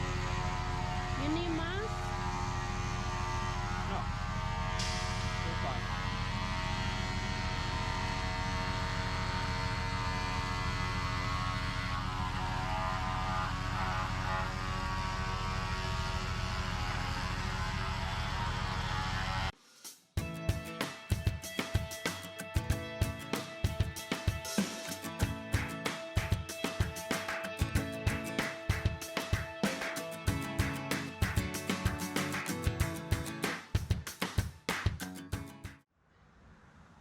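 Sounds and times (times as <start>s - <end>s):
motor humming steadily: 0.0s - 19.5s.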